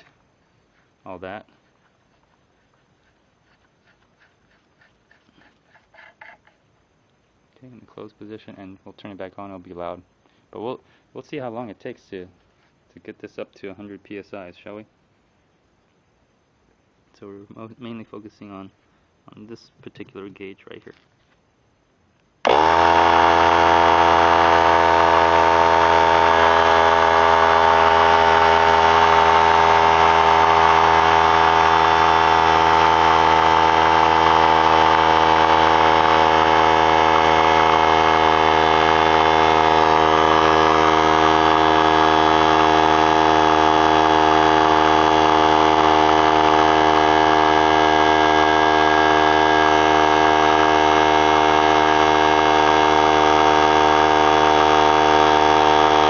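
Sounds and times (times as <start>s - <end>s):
air compressor running: 0.0s - 6.6s, 22.4s - 56.0s.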